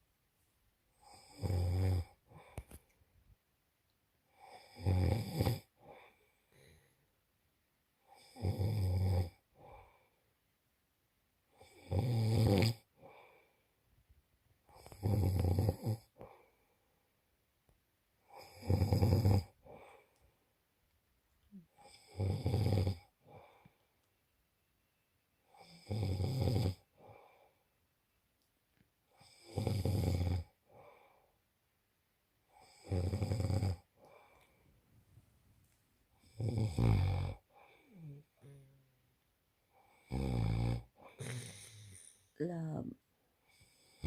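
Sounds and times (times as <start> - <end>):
man snoring: 1.0 - 2.6, 4.3 - 6.1, 8.1 - 9.7, 11.6 - 13.3, 14.7 - 16.4, 18.3 - 20.0, 21.8 - 23.6, 25.5 - 26.9, 29.2 - 30.6, 32.5 - 34.2, 36.2 - 38.8, 39.8 - 42.2, 43.5 - 44.0
quiet breathing: 2.0 - 3.2, 5.6 - 7.3, 9.3 - 10.4, 12.8 - 13.9, 15.8 - 17.2, 18.2 - 20.6, 23.0 - 24.1, 26.8 - 27.8, 30.4 - 31.5, 33.5 - 39.0, 39.6 - 44.0.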